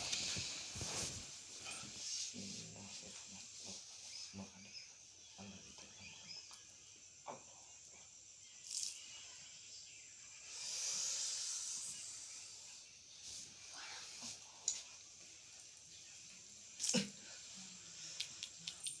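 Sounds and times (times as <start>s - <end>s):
hiss: 0.0s - 4.2s, 10.3s - 14.7s
insects chirring: 0.1s - 19.0s.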